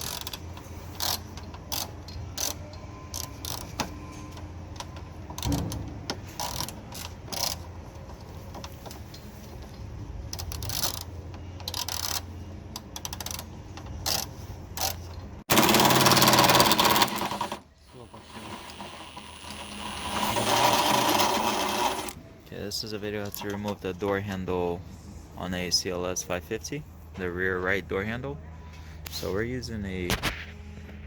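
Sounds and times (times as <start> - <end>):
ratchet wrench clicking: 0.0 - 3.9, 4.7 - 7.7, 10.3 - 22.2
loud steady mechanical noise: 15.5 - 22.2.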